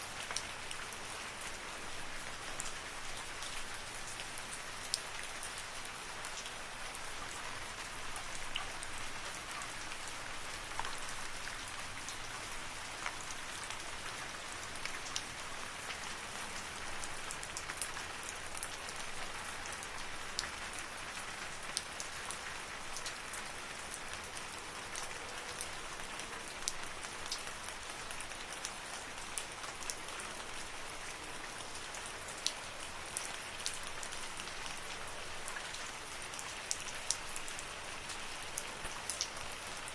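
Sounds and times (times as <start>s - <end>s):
steady rain hiss: 0.0s - 39.9s.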